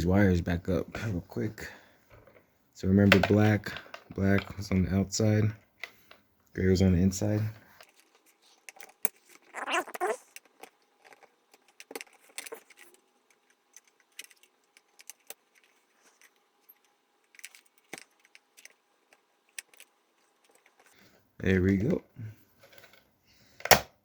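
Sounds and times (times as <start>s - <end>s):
small clicks and light rattles: 10.2s - 21.0s.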